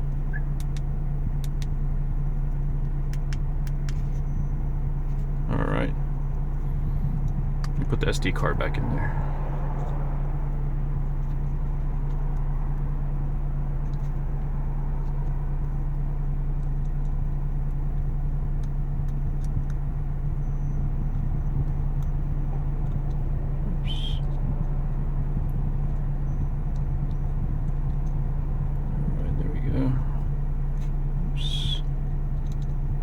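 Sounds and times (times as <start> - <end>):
low mechanical hum: 0.0 - 33.0
short high-pitched chirp: 23.8 - 24.3.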